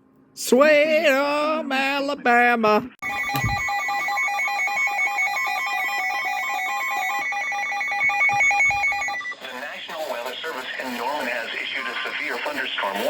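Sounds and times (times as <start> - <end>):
held high tone: 3.0 - 9.4
high pitched electronic alert beeps: 3.0 - 9.4.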